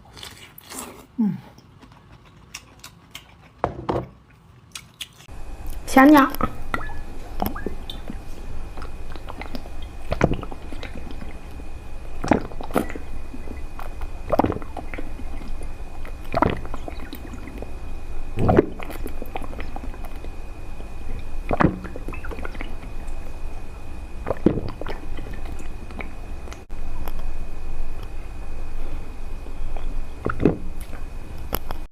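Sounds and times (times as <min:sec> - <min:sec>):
person biting and chewing: 0:00.0 - 0:03.6, 0:04.6 - 0:05.3
faint high whine: 0:05.3 - 0:31.9
steady low hum: 0:05.3 - 0:31.9.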